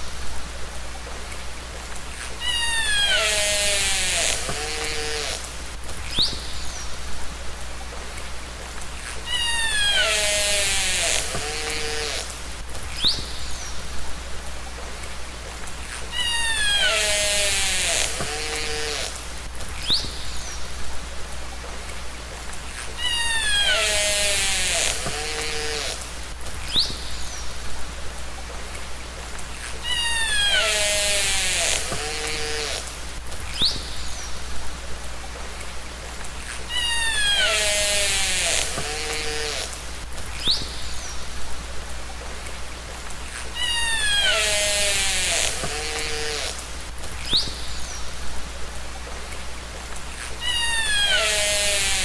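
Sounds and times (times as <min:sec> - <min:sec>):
background hiss: 0:00.0 - 0:52.0
killer whale calls: 0:02.4 - 0:05.5, 0:09.2 - 0:12.4, 0:16.1 - 0:19.2, 0:22.9 - 0:26.0, 0:29.7 - 0:32.9, 0:36.6 - 0:39.7, 0:43.5 - 0:46.4, 0:50.4 - 0:52.0.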